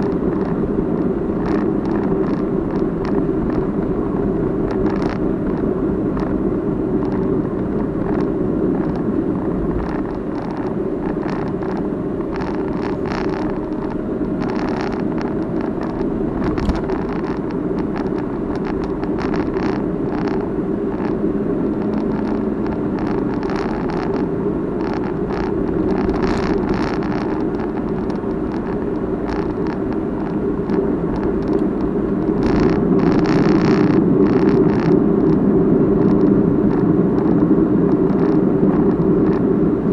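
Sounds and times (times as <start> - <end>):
road and engine rumble in car: 0.0 - 39.9
camera body rattling: 7.0 - 35.4.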